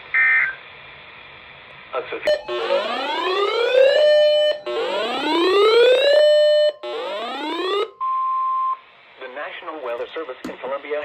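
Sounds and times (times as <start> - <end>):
electronic alarm siren whoop: 2.3 - 8.0.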